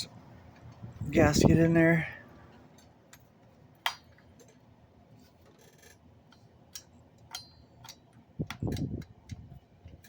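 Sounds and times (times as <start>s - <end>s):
small parts clicking and tapping: 5.4s - 10.0s.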